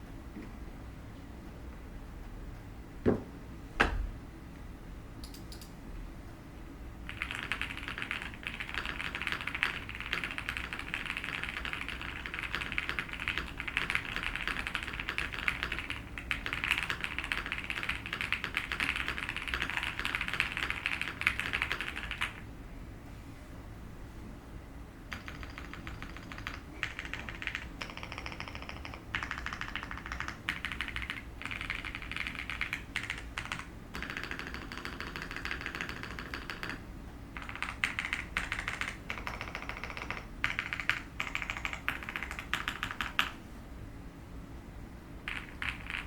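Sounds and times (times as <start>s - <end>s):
mechanical keyboard typing: 7.1s - 22.4s, 25.1s - 36.8s, 37.4s - 43.4s, 45.3s - 46.0s.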